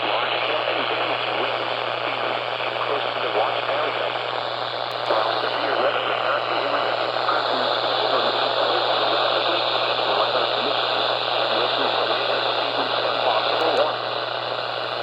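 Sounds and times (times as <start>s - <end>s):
radio static hiss: 0.0s - 15.0s
steady low hum: 0.0s - 15.0s
faint indistinct speech: 5.0s - 14.1s.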